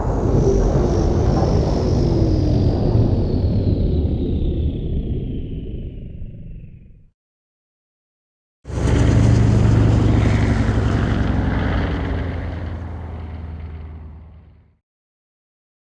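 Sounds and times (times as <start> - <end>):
hovercraft engine hum passing by: 8.7 - 14.8.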